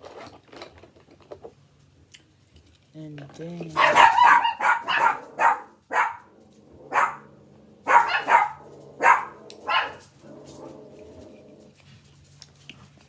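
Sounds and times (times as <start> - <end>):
dog barking: 3.8 - 6.3, 6.9 - 10.1.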